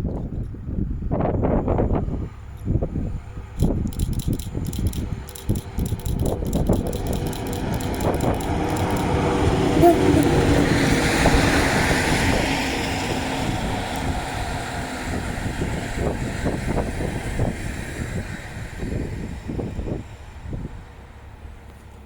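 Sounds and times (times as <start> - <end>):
train rolling past: 2.2 - 22.0
wheels clacking over rail joints: 3.6 - 14.3.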